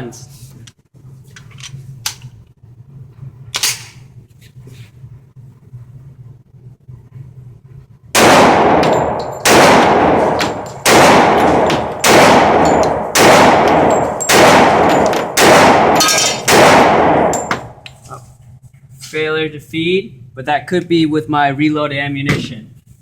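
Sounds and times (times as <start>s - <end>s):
pistol shots: 8.2s - 17.8s.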